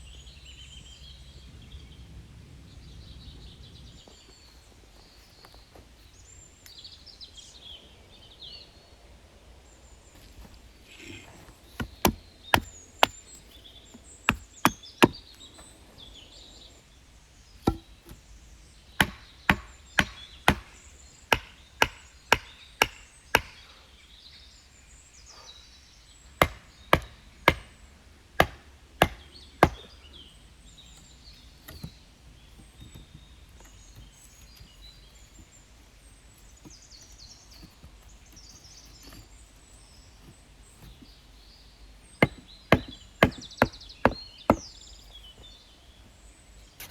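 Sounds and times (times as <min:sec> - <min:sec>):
axe chopping wood: 0:11.1 - 0:15.4, 0:17.6 - 0:18.2, 0:19.0 - 0:23.6, 0:26.4 - 0:27.8, 0:28.4 - 0:30.0, 0:42.2 - 0:44.8.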